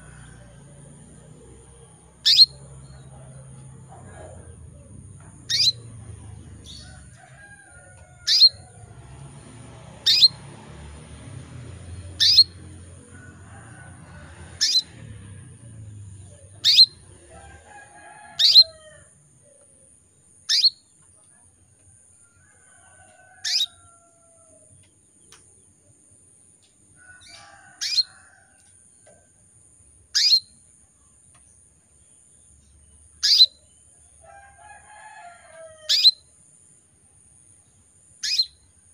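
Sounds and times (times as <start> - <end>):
canary chirping: 1.1 - 3.9, 4.6 - 7.2, 8.2 - 12.8, 14.5 - 18.8, 20.4 - 20.8, 23.4 - 23.8, 27.2 - 28.1, 30.1 - 30.6, 33.1 - 33.8, 35.9 - 36.2, 38.2 - 38.6.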